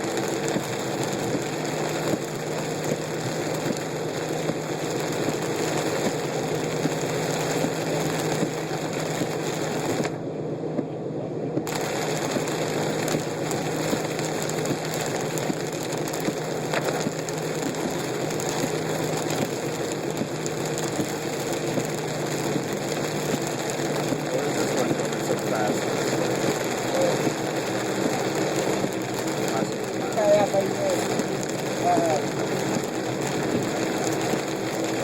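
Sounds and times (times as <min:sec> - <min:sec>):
rain rattling on car: 0:00.0 - 0:10.2, 0:11.6 - 0:35.0
car engine and road hum: 0:00.0 - 0:35.0.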